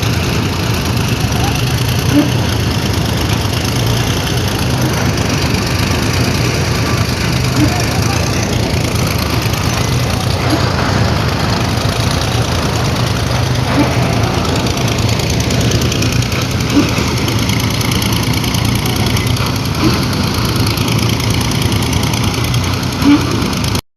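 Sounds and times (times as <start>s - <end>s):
machine engine running: 0.0s - 23.8s.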